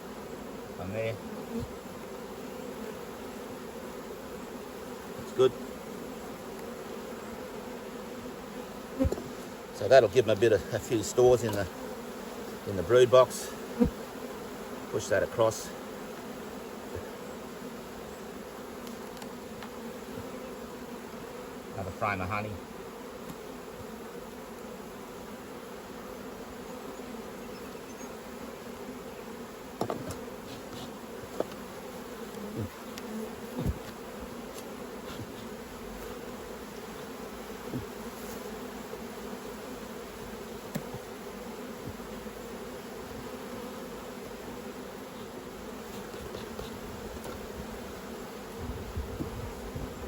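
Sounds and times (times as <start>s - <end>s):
honey bees buzzing: 0.0s - 50.0s
wooden hive frames knocking: 9.0s - 9.4s, 29.8s - 31.7s, 32.3s - 36.2s, 37.6s - 38.2s, 40.6s - 41.2s.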